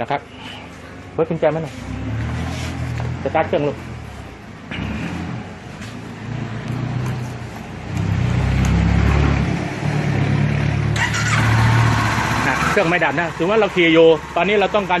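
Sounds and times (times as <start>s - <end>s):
motorcycle engine idling: 11.0s - 15.0s.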